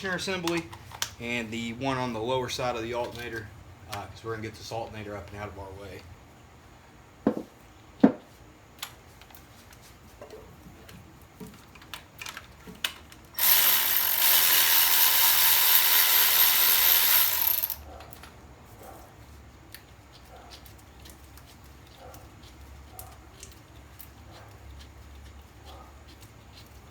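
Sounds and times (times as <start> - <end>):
tools tapping: 7.3 - 8.3
ratchet wrench rattling: 13.4 - 17.8.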